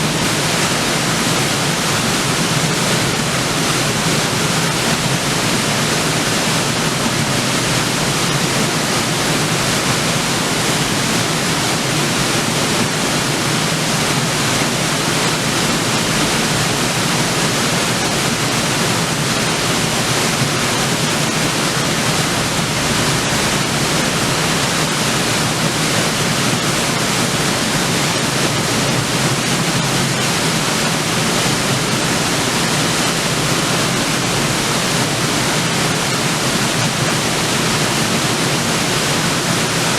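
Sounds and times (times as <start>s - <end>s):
waterfall splashing onto rocks: 0.0s - 39.9s.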